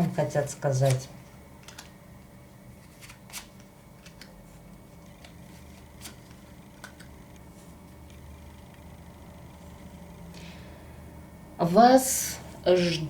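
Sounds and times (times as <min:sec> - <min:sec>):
low room hum: 0:00.0 - 0:13.0
cards rustling: 0:00.7 - 0:02.0, 0:02.8 - 0:07.9.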